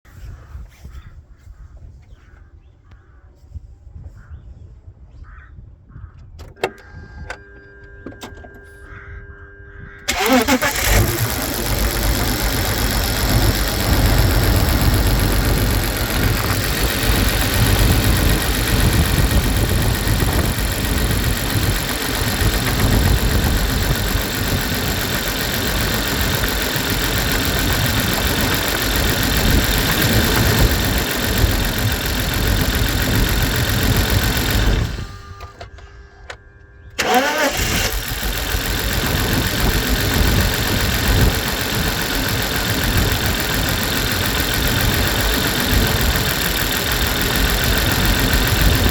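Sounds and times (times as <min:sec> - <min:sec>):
car engine idling loudly: 0:10.1 - 0:35.0, 0:37.0 - 0:48.9
engine cranking: 0:10.1 - 0:48.9.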